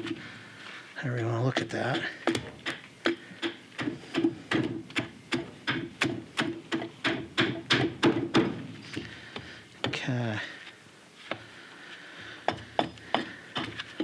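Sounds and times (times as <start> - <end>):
axe chopping wood: 1.6 - 10.0, 12.4 - 14.0.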